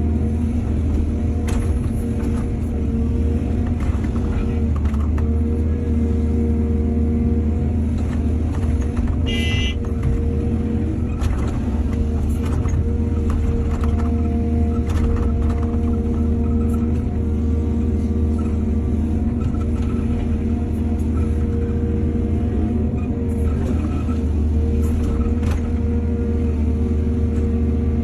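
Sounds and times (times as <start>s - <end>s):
diesel excavator engine running: 0.0s - 28.0s.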